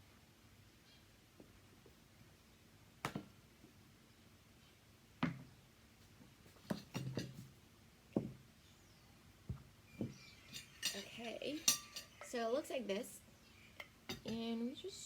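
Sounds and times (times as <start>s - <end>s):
utensils and dishes clinking: 10.4s - 12.4s.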